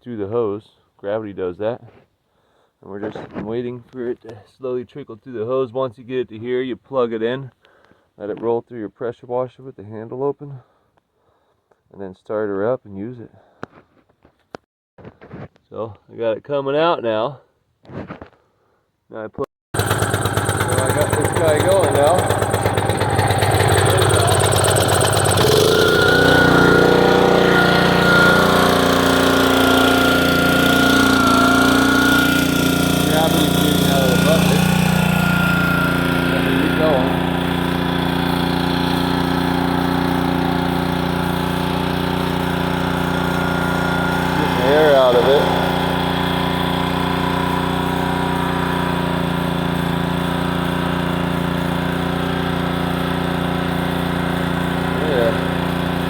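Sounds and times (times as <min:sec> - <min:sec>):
pressure washer engine running: 0:19.8 - 0:56.0.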